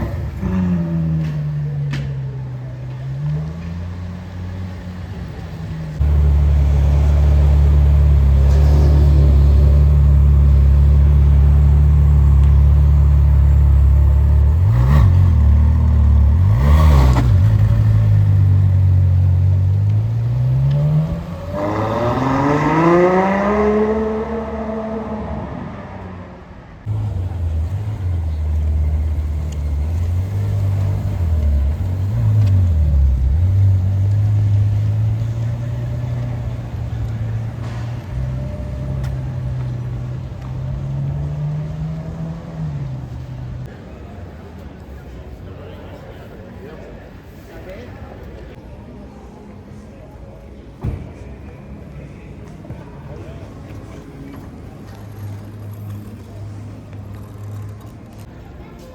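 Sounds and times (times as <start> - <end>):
car engine idling and revving: 0.0 - 43.7.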